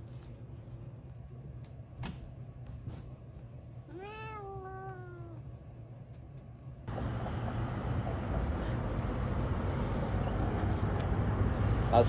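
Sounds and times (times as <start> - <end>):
cat meowing: 3.9 - 5.4.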